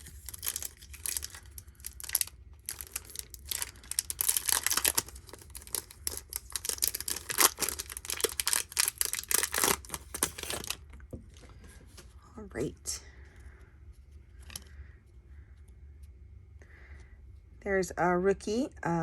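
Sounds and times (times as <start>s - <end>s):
plastic wrapper tearing and crinkling: 0.0s - 10.8s.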